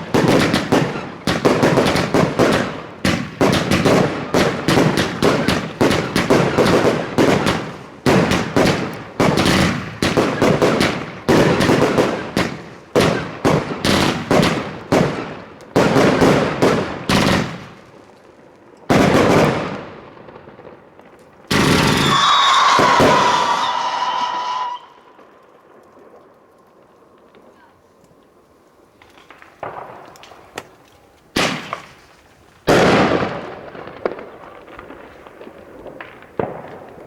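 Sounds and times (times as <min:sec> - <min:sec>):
fireworks banging: 0:00.0 - 0:37.0
hissing rush with whistle: 0:21.9 - 0:25.0.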